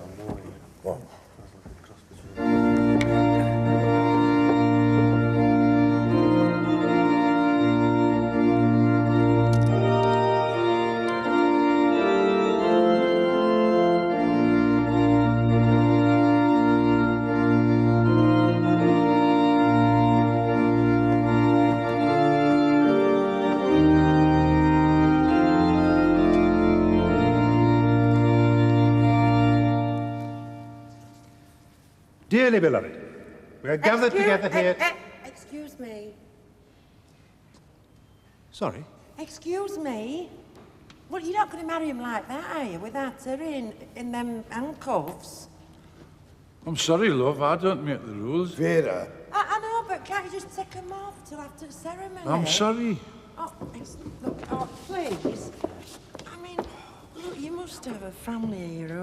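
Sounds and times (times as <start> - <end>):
church organ chords: 2.4 - 34.9.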